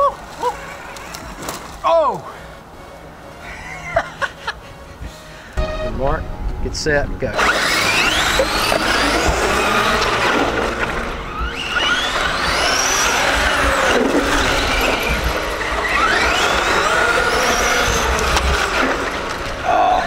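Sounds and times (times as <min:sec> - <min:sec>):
rc car electric motors whining: 0:00.0 - 0:01.8, 0:07.3 - 0:20.0
tyre and gear noise: 0:00.0 - 0:05.3, 0:06.8 - 0:20.0.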